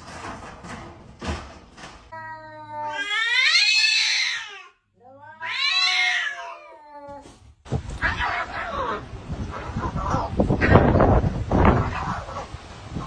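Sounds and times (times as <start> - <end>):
cat yowling: 2.1 - 7.3, 8.0 - 9.0.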